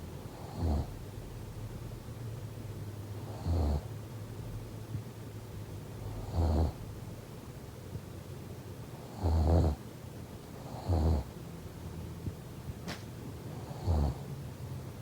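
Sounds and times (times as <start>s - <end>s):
low steady hum: 0.0s - 9.1s.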